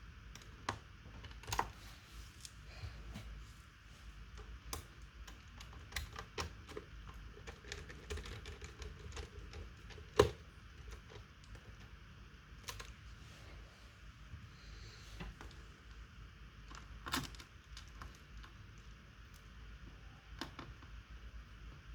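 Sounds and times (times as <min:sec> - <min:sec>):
laptop keyboard typing: 0:04.3 - 0:13.0.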